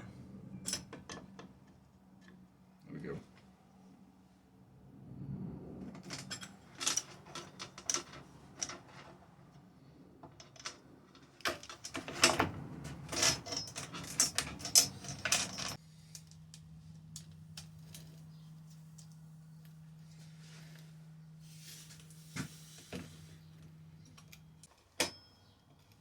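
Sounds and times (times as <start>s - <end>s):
metal tools clicking and clattering: 6.0s - 9.2s, 10.4s - 16.3s.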